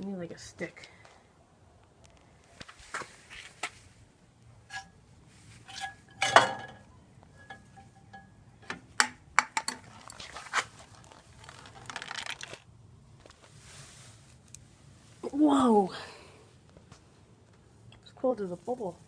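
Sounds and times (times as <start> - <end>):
handling rustle: 9.8 - 15.3.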